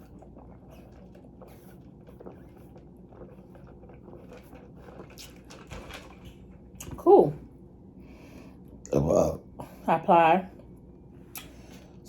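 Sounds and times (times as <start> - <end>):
chewing: 0.0 - 6.9.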